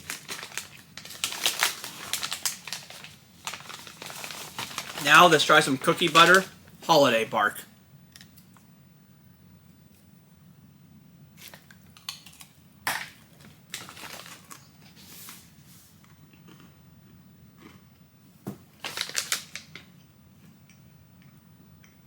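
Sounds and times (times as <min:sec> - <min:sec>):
package crinkling: 0:00.0 - 0:07.3, 0:11.4 - 0:14.9, 0:18.8 - 0:19.9.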